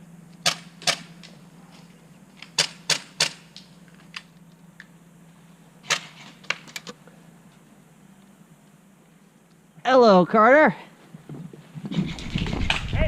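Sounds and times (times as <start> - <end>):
airsoft gun shots: 0.4 - 1.2, 2.6 - 3.5.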